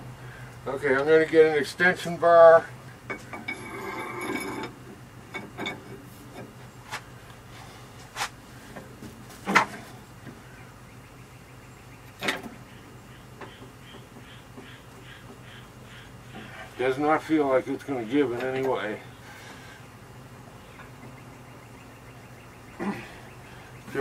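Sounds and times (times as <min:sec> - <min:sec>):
low steady hum: 0:00.0 - 0:24.0
metal tools clinking: 0:03.1 - 0:06.0.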